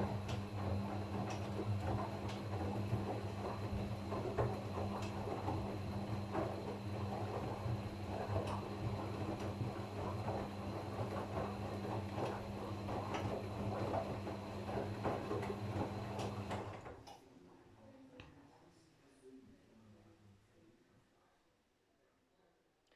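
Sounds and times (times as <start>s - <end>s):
laundry and water tumbling in drum: 0.0s - 17.0s
washing machine motor hum: 0.0s - 17.1s.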